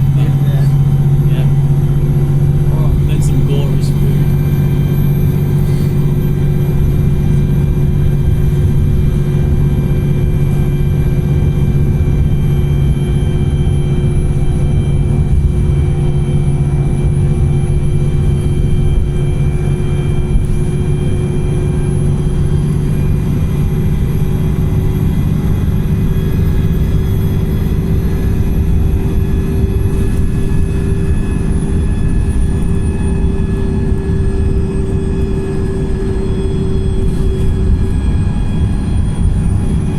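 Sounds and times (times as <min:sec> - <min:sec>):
bus engine rumble: 0:00.0 - 0:39.9
faint high whine: 0:00.0 - 0:39.9.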